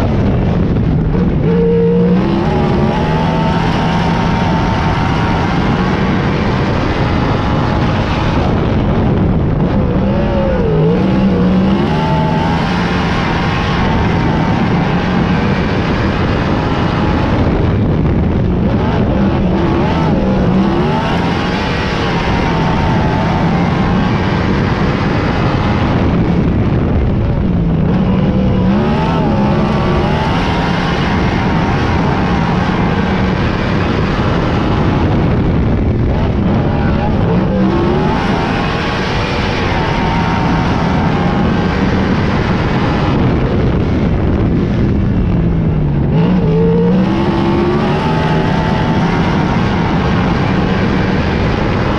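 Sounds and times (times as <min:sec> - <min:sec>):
race car engines at speed: 0:00.0 - 0:51.9.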